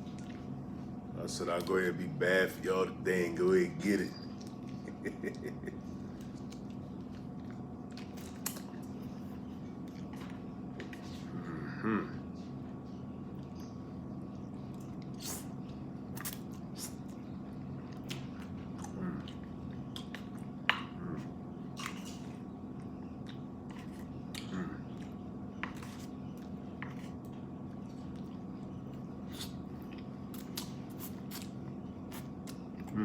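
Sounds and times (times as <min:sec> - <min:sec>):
electric fan hum: 0:00.0 - 0:33.0
person chewing and smacking: 0:04.3 - 0:05.4, 0:06.1 - 0:11.3, 0:14.3 - 0:33.0.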